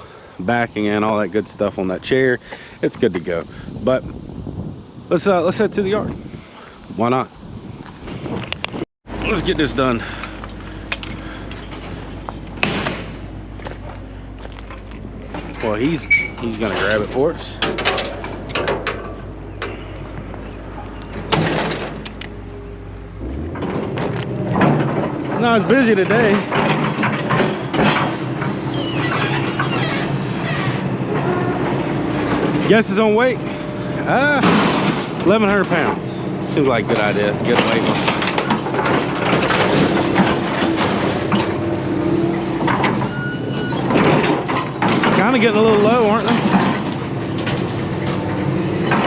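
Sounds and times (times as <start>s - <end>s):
vehicle engine idling: 9.1s - 29.0s
metallic clatter: 14.6s - 22.6s.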